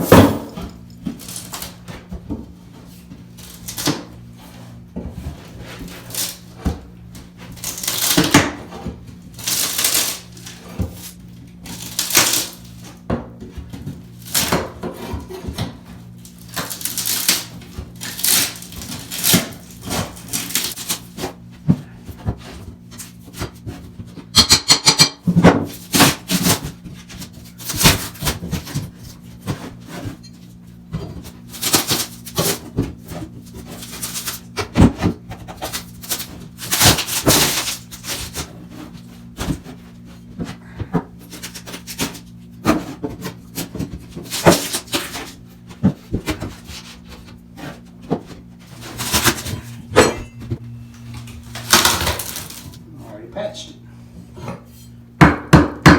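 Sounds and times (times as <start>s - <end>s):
scraping and rubbing on wooden floor: 51.5s - 52.8s.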